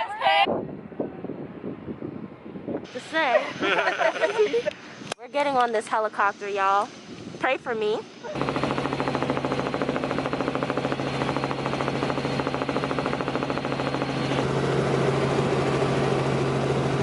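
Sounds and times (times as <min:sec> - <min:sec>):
high turbine whine: 0:02.8 - 0:17.0
helicopter rotor chopping: 0:03.6 - 0:17.0.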